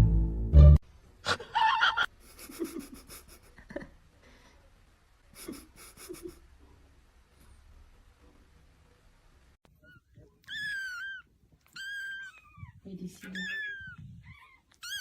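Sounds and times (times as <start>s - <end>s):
music: 0.0s - 0.8s.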